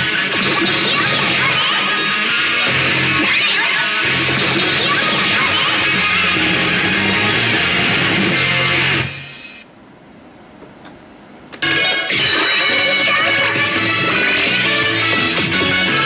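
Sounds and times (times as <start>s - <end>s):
rock music with electric guitar: 0.0s - 9.6s, 11.6s - 16.0s.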